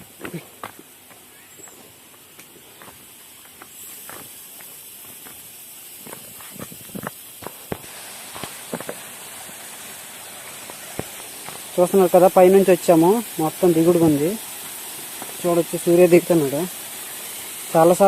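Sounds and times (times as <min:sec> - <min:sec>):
footsteps on rough trail: 0:00.0 - 0:09.0, 0:10.6 - 0:11.7
steady high hiss: 0:00.0 - 0:18.0.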